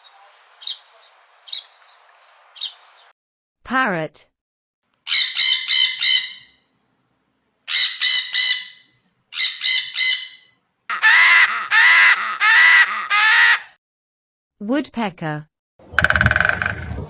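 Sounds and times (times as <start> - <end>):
parrot squawking: 0.0 - 2.0, 2.6 - 3.0, 5.1 - 6.5, 7.7 - 13.7.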